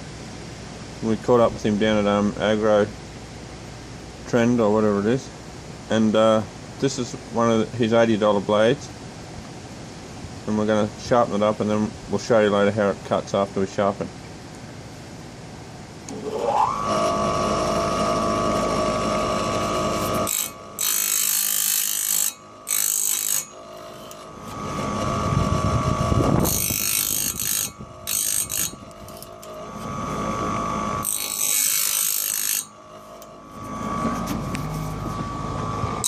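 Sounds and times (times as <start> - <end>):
grinding wheel motor whine: 16.1 - 36.0
harsh high-pitched grinding: 16.1 - 36.0.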